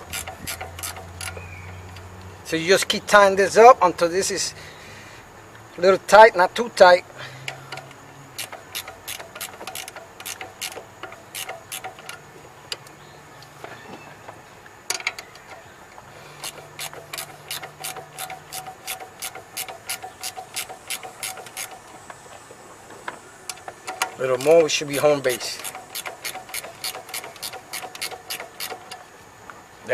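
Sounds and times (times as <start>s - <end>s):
hand ratchet clicking: 0.0s - 2.1s, 7.4s - 12.9s, 16.4s - 21.9s, 23.5s - 29.1s.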